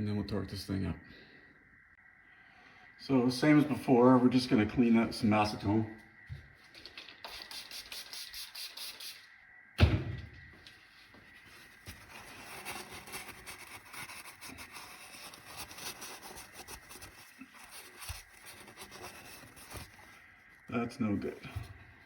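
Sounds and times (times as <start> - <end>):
sharp knock: 9.8 - 10.4
rag scrubbing metal: 11.4 - 20.2.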